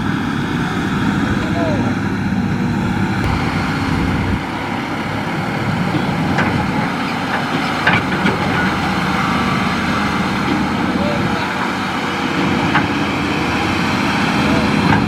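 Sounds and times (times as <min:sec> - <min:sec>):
sharp knocks: 0:03.2 - 0:05.4
excavator diesel engine running: 0:03.2 - 0:13.9.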